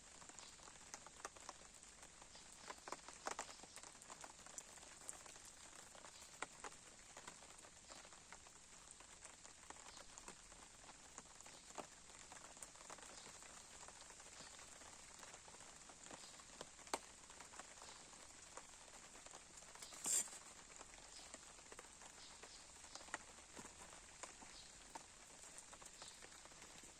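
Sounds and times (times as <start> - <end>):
faint fire hiss: 16.0 - 21.4.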